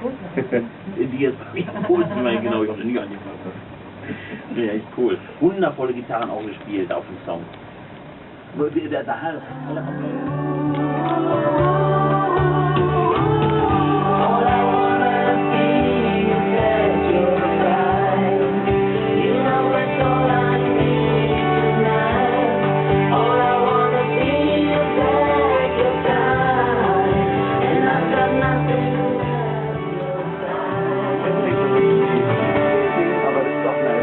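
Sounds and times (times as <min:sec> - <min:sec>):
bass line: 0:09.4 - 0:34.0
guitars: 0:09.4 - 0:34.0
person singing: 0:09.4 - 0:34.0.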